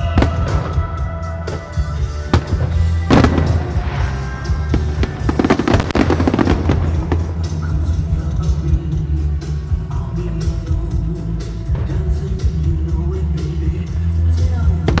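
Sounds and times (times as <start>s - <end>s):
fireworks bangs and pops: 0.0s - 8.6s
music with heavy bass: 0.0s - 15.0s.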